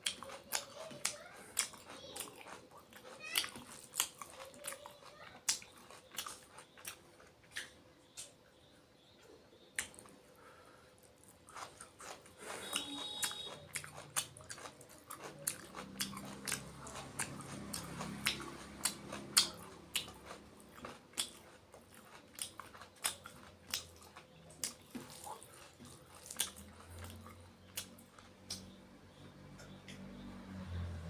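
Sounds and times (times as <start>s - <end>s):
person chewing food: 0.0s - 30.2s
wet mouth clicks and smacks: 27.8s - 28.7s.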